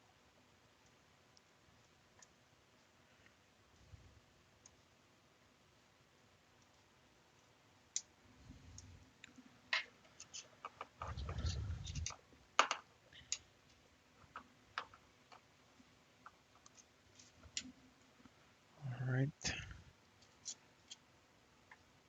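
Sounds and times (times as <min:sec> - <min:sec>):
small clicks and light knocks: 0:06.5 - 0:18.4, 0:19.5 - 0:22.0
dull rumble: 0:11.0 - 0:12.1.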